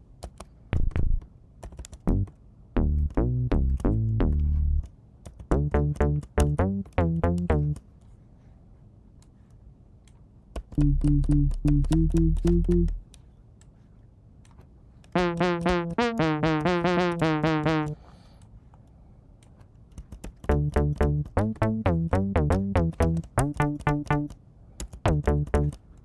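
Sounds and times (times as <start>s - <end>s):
synth bass note patterns: 2.1s - 4.9s, 5.5s - 7.8s, 10.8s - 13.0s, 15.2s - 18.0s, 20.5s - 24.4s, 25.1s - 25.8s.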